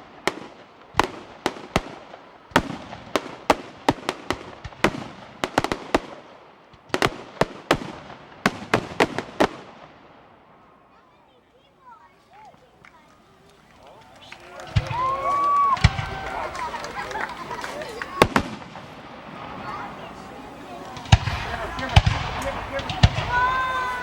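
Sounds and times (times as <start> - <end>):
fireworks bangs: 0.0 - 24.0.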